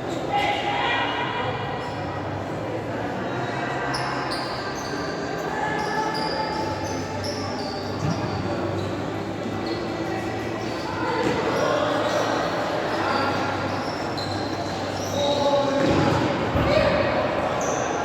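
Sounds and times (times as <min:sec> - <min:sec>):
shoes squeaking on court: 0:03.9 - 0:16.6.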